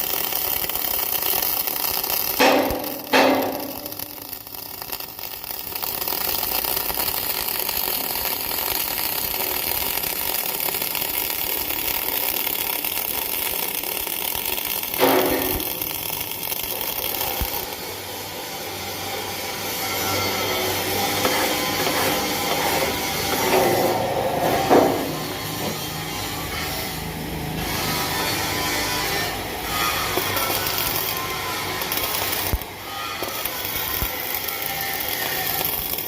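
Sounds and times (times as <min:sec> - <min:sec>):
welding arc hissing: 0:00.0 - 0:36.0
sharp knock: 0:02.4 - 0:03.9.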